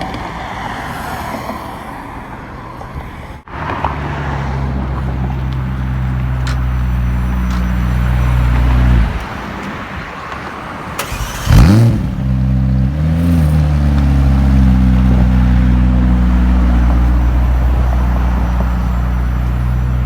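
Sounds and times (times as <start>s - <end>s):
sports car engine revving: 3.7s - 9.2s, 11.0s - 20.0s.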